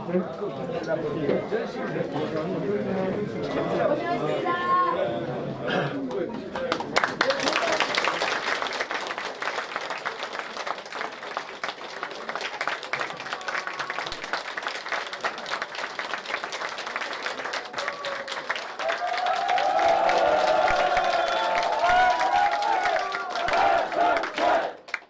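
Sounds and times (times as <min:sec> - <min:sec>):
crowd applauding: 0:06.1 - 0:25.0
crowd shouting and cheering: 0:17.6 - 0:24.8.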